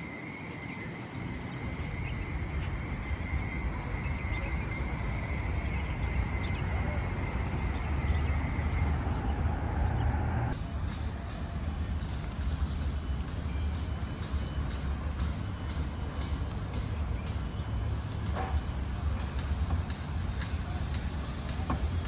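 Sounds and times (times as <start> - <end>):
high-pitched whine: 0.0 - 10.6
small birds chirping: 0.0 - 10.6
traffic rumble: 0.0 - 18.3.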